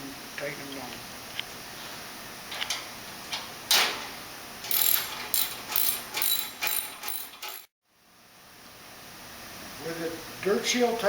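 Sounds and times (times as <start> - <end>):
socket ratchet clicking: 4.7 - 7.7.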